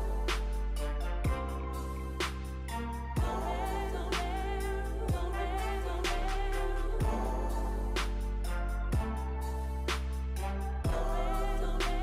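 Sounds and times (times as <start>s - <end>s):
background music with slow beat: 0.0s - 12.0s
person singing: 3.2s - 9.1s.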